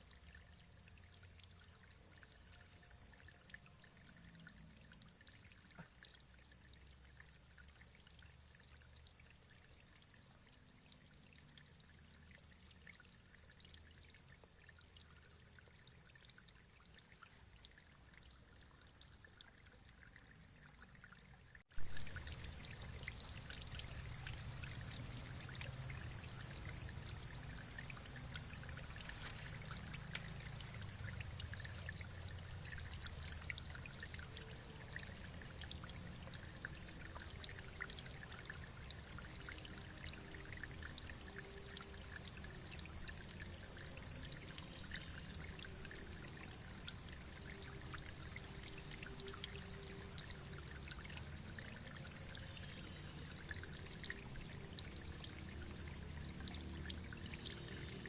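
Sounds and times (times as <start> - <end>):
water drips and splashes: 0.0 - 58.0
running water pouring: 21.8 - 42.6.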